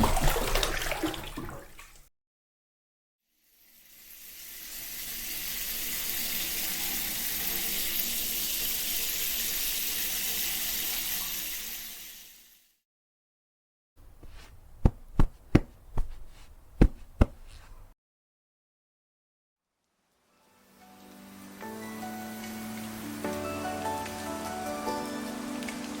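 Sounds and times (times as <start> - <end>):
water running: 14.0 - 17.9
sharp knocks or clicks: 14.1 - 17.9.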